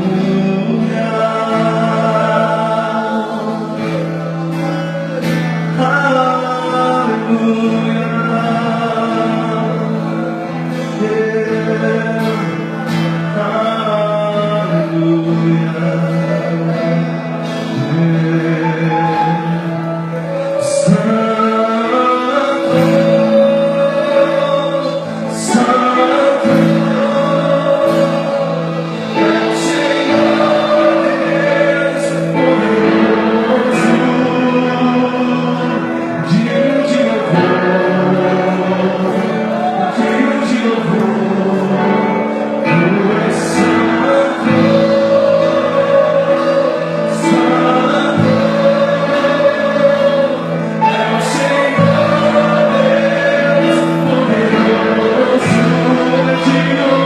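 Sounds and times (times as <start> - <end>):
voices singing gospel song: 0.0 - 57.0
sustained chords: 14.3 - 57.0.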